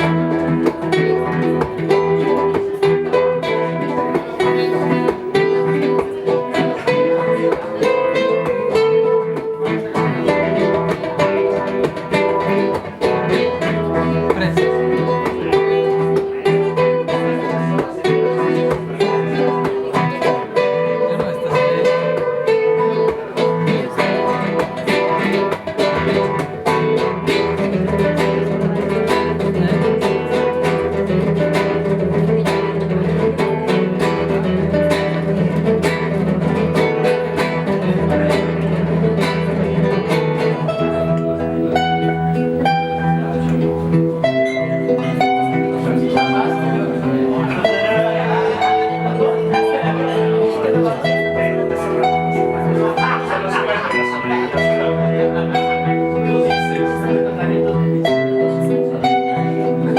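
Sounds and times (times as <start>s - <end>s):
plucked guitar music: 0.0s - 59.9s.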